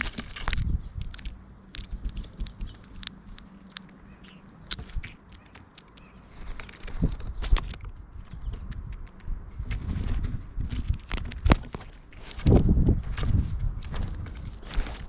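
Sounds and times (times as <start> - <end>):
light taps and clicks: 0.0 - 9.8.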